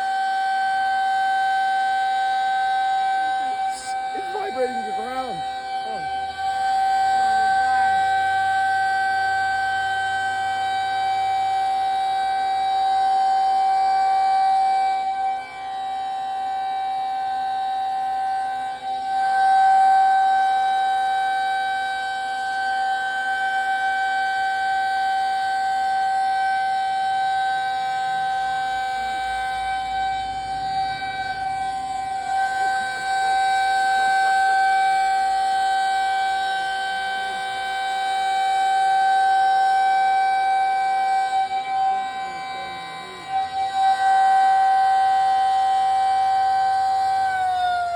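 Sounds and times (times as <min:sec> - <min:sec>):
tornado siren steady tone: 0:00.0 - 0:47.9.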